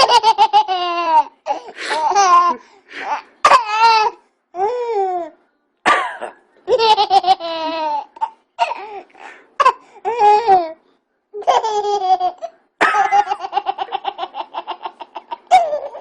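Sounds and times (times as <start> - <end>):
baby laughing: 0.0 - 4.7, 6.6 - 8.9, 11.4 - 16.0.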